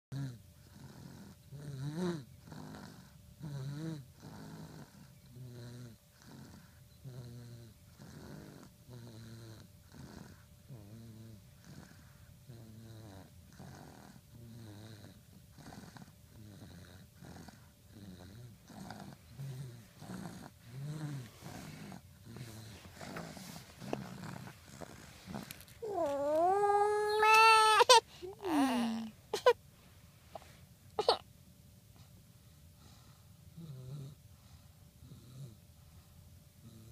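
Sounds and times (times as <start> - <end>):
person snoring: 0.1 - 29.2.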